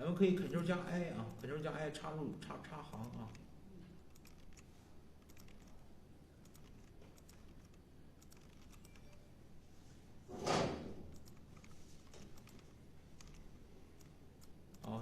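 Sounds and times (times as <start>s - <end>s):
keyboard typing: 2.7s - 5.8s, 6.4s - 9.3s, 11.0s - 15.0s.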